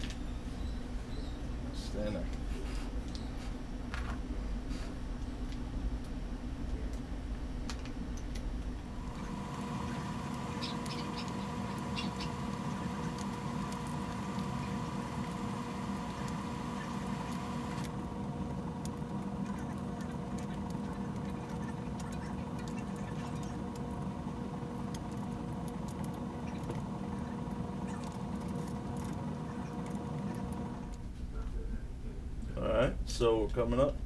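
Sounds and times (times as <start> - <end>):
steady hum: 8.7 - 31.1.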